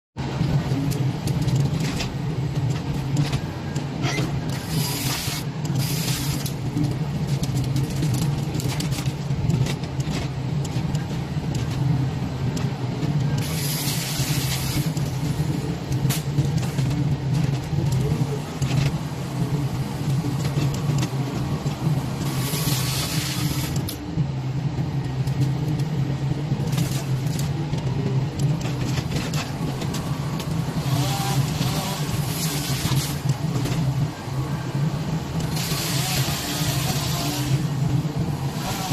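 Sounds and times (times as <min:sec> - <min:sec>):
excavator diesel engine running: 0:00.2 - 0:38.9.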